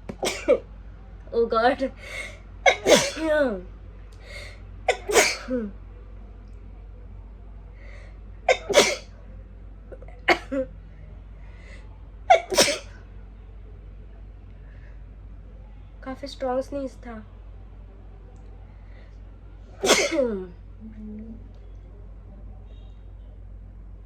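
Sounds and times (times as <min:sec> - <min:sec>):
woman sneezing: 0:02.7 - 0:03.3, 0:05.0 - 0:05.6, 0:12.3 - 0:12.9, 0:19.8 - 0:20.3.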